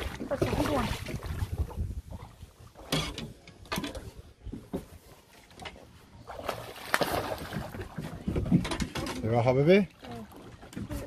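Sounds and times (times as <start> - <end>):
gear knocking and clattering on boat: 2.8 - 5.0, 7.5 - 9.6.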